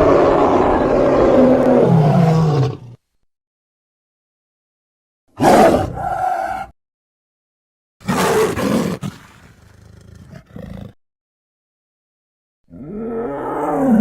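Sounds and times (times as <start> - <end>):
monster roars: 0.0 - 3.0, 12.7 - 14.0.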